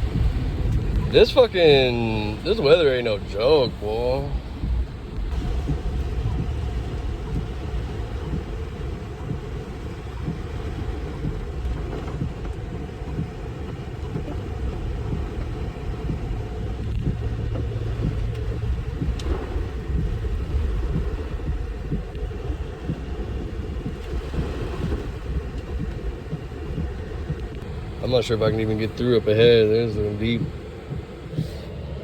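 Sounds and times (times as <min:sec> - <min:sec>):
vehicle rumble from inside cab: 0:00.0 - 0:32.0.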